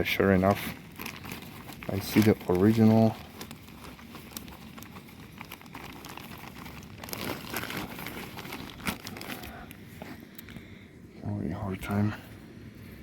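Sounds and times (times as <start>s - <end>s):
plastic wrapping crinkling: 0.0s - 10.1s.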